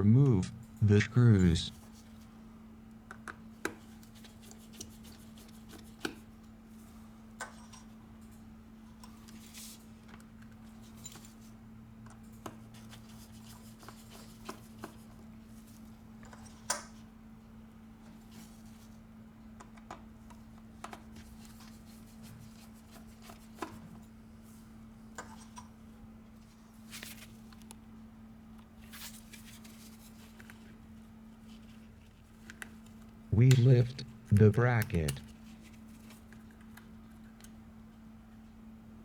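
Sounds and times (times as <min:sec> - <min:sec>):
steady low hum: 0:00.0 - 0:03.1, 0:28.0 - 0:36.1.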